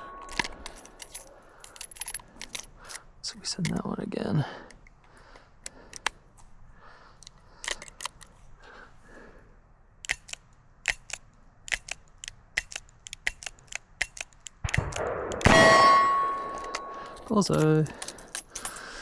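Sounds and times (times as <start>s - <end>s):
short sharp clicks: 10.1s - 15.6s.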